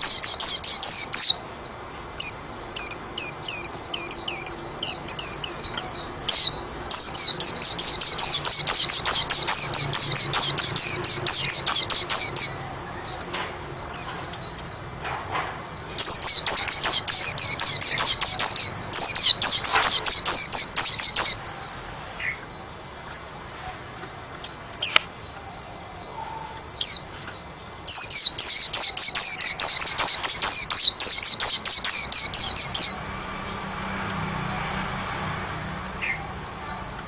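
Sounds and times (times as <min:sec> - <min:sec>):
songbird whistled notes: 0:00.0 - 0:01.4, 0:02.2 - 0:14.9, 0:16.0 - 0:22.4, 0:24.4 - 0:33.0
soft bird chirps: 0:00.0 - 0:37.0.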